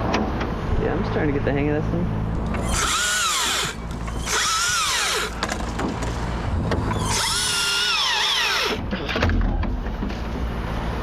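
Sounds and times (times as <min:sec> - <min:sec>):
chainsaw motor whine: 0:02.4 - 0:05.7, 0:06.4 - 0:08.9.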